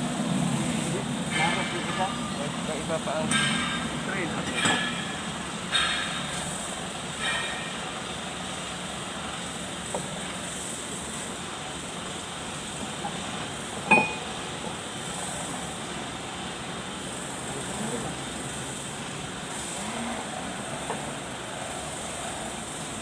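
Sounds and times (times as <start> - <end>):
steady background hum: 0.0 - 23.0
sharp metallic clink: 13.9 - 14.3.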